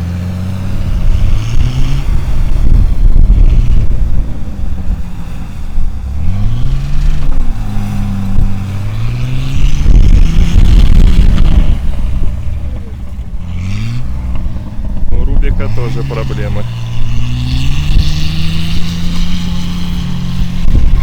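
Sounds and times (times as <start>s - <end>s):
suv engine revving: 0.0s - 21.0s
strong wind on microphone: 0.8s - 12.6s, 16.6s - 21.0s.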